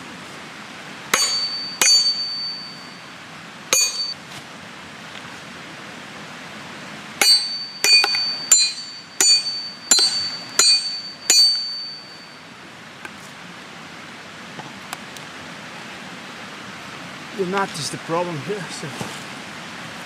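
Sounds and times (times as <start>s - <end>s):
steady hiss: 0.0s - 20.0s
ringing metal-on-metal blows: 1.1s - 3.1s, 3.7s - 4.2s, 7.2s - 12.4s.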